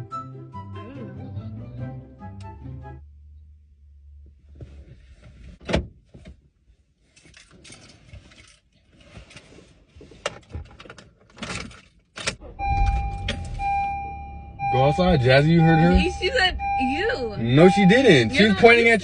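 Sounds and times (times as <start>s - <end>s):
low rumble: 12.4s - 18.8s
steady high tone: 12.4s - 19.0s.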